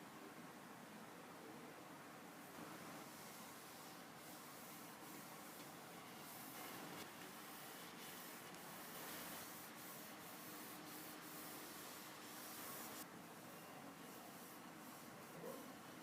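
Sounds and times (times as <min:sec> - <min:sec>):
hand sanding: 0:02.6 - 0:13.0.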